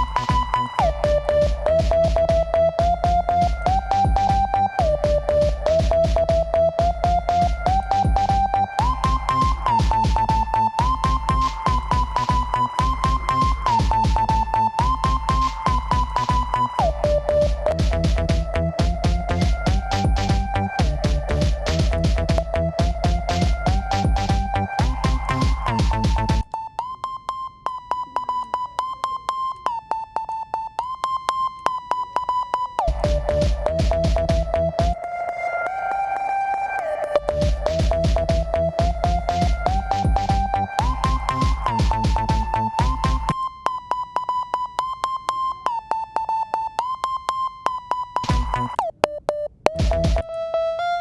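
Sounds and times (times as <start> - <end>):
drum beat: 0.0 - 26.5, 32.9 - 35.0, 37.2 - 43.4, 48.2 - 48.8, 49.8 - 50.3
pulsing synth beep: 0.0 - 51.0.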